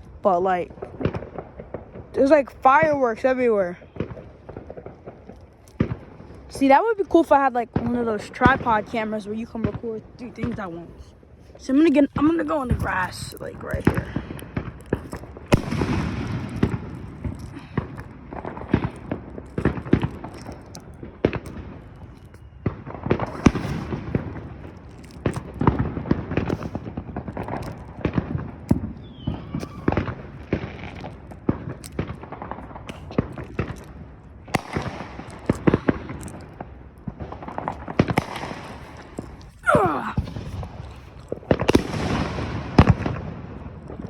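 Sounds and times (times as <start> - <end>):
crackling pops: 0.0 - 44.0
distant firework rumble: 0.1 - 39.5
sharp firework bangs: 13.7 - 21.8, 40.2 - 43.8.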